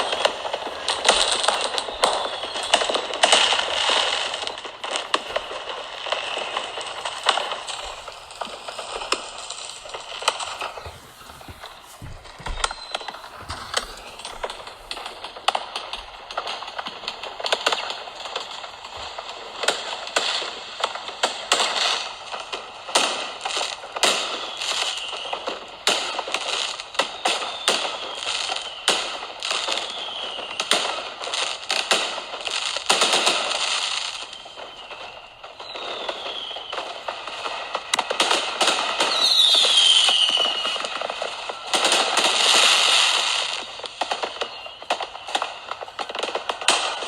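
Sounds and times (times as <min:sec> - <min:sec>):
firework whistles falling in pitch: 0:00.0 - 0:18.6, 0:34.0 - 0:47.0
fireworks bangs and crackling: 0:00.0 - 0:47.0.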